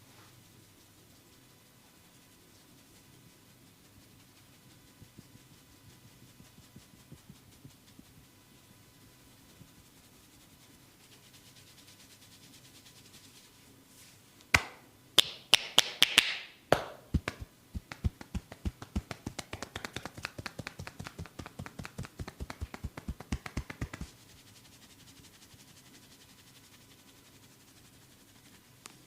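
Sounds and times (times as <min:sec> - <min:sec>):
hands slapping body: 0:14.5 - 0:24.1
fast light tapping: 0:16.7 - 0:24.1.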